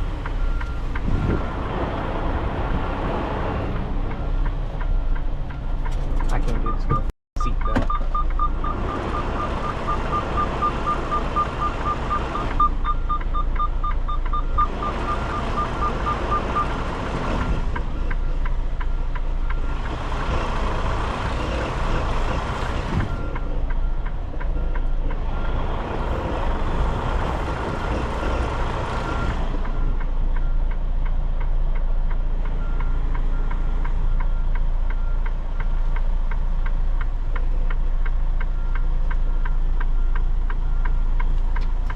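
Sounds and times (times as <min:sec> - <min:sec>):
diesel truck engine running: 0:00.0 - 0:41.9
reversing alarm beeping: 0:06.6 - 0:19.9.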